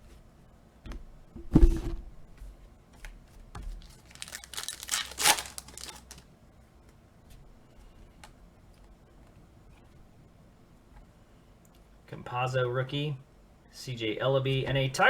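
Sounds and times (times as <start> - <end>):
foil wrapper tearing and crinkling: 3.8 - 6.2.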